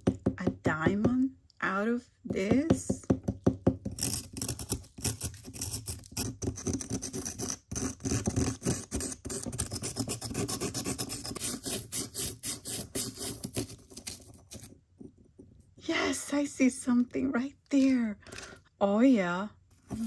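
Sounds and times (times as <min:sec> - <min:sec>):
chisel scraping and chipping: 0:03.6 - 0:15.6.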